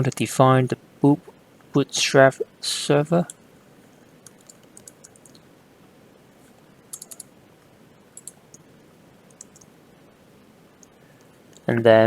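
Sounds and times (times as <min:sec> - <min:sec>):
typing on computer keyboard: 0:04.2 - 0:05.4, 0:06.9 - 0:07.3, 0:08.2 - 0:08.6, 0:09.3 - 0:09.7.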